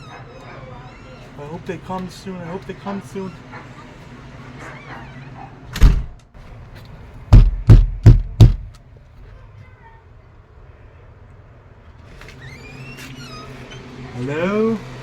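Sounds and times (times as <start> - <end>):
knocking on a door: 7.3 - 8.8.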